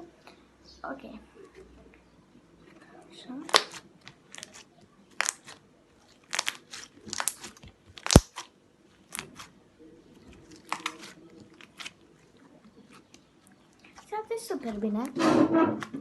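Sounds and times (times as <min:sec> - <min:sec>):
slime crackling and popping: 0:03.5 - 0:09.6, 0:10.2 - 0:15.2.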